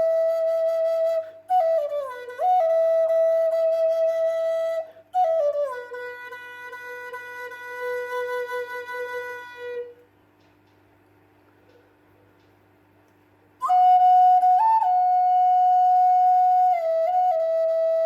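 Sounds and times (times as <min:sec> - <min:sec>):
solo flute: 0:00.0 - 0:10.1, 0:13.6 - 0:18.0.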